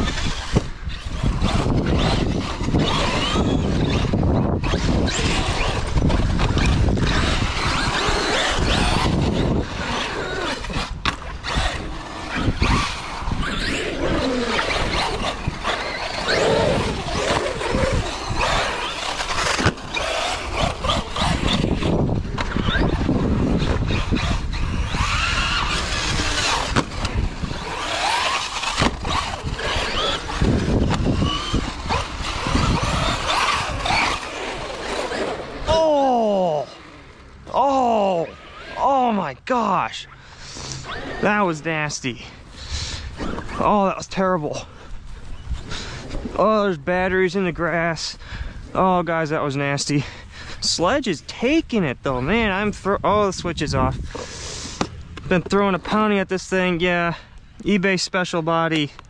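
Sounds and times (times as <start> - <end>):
rc truck motor whining: 0.0 - 39.2, 39.9 - 41.4, 42.2 - 43.7.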